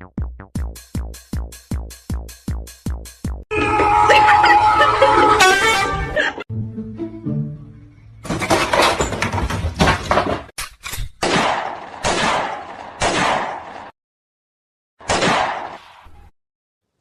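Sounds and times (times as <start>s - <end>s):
clattering and banging: 8.2s - 10.6s.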